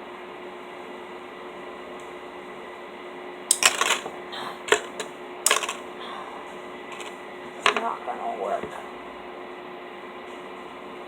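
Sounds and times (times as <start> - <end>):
steady low hum: 0.0 - 11.0
plastic straws clicking and rattling: 3.5 - 4.1, 4.7 - 5.8, 6.9 - 7.8
sharp plastic clicks: 3.5 - 4.1, 4.7 - 5.8.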